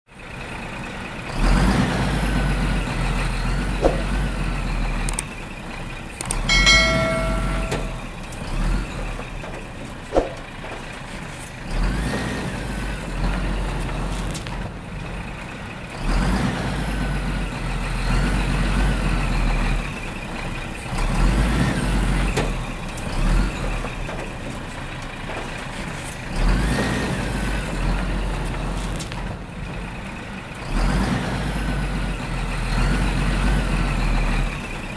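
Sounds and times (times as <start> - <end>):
heavy vehicle engines rumbling: 0.1 - 34.9.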